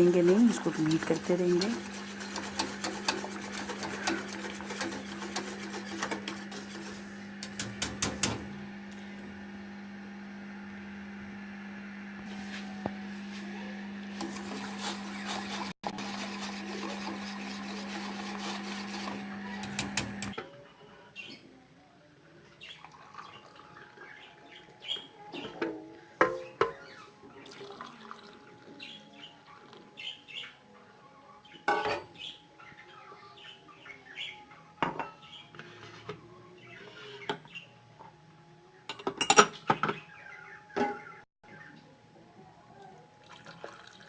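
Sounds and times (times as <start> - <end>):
whisk clicking in a saucepan: 0.1 - 8.4.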